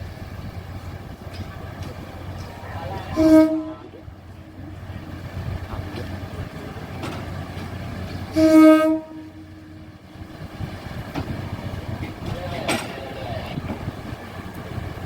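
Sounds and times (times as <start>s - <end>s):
train rumbling: 0.0s - 15.0s
train horn blasts: 2.3s - 4.9s, 8.2s - 10.0s.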